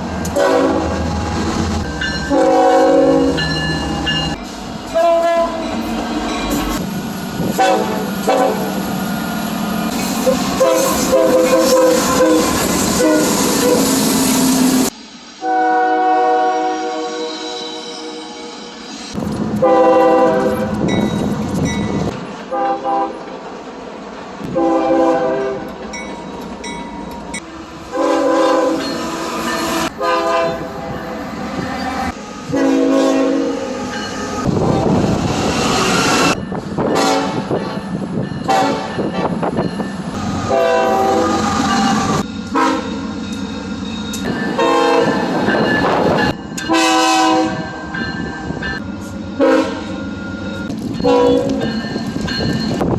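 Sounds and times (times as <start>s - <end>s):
train rumbling on rails: 0.0s - 52.9s
train horn blasts: 0.2s - 1.1s, 2.2s - 4.0s, 4.9s - 5.8s, 7.5s - 8.7s, 10.2s - 14.0s, 15.4s - 18.4s, 19.6s - 20.8s, 22.5s - 23.2s, 24.5s - 25.8s, 27.7s - 29.0s, 29.6s - 31.3s, 32.5s - 33.8s, 36.8s - 37.6s, 38.4s - 39.2s, 40.2s - 43.1s, 44.2s - 47.8s, 49.4s - 50.0s, 51.0s - 51.7s.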